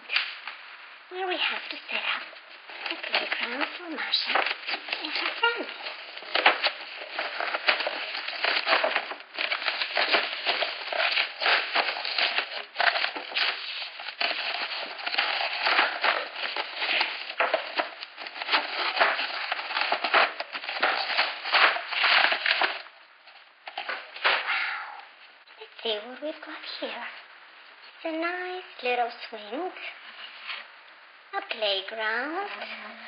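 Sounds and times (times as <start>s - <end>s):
plastic packaging crinkling: 1.3s - 24.4s.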